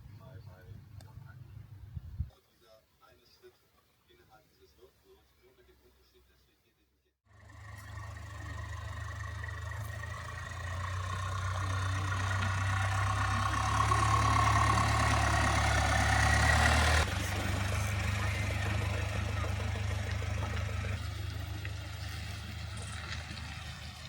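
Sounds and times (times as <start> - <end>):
van engine and road noise: 7.3 - 24.0.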